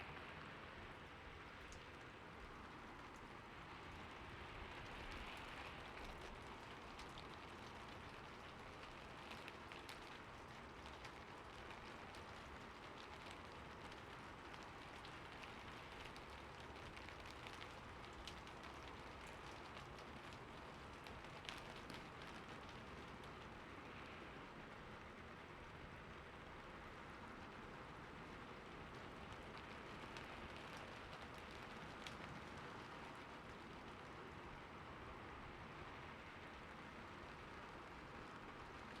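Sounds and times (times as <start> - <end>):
sharp raindrop ticks: 0.0 - 25.7, 26.4 - 35.0, 35.6 - 39.0
rain on a rooftop: 0.0 - 39.0.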